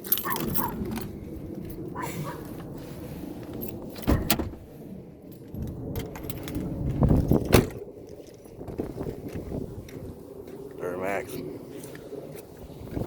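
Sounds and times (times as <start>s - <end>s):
metallic jangling and knocks: 0.0s - 1.2s, 5.3s - 7.8s.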